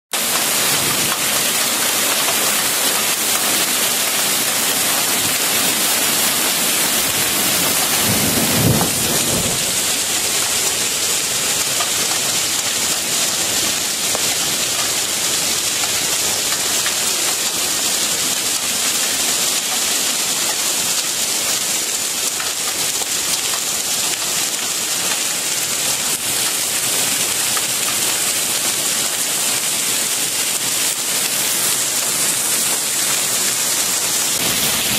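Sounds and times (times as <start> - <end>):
heavy rain and hail: 0.2 - 34.9
thunder rumble: 7.0 - 11.2.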